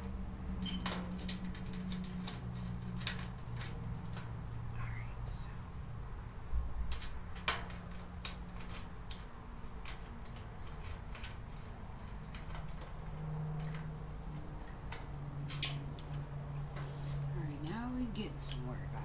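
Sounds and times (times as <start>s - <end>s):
cart parts clicking and knocking: 0.0s - 4.4s, 6.8s - 16.8s.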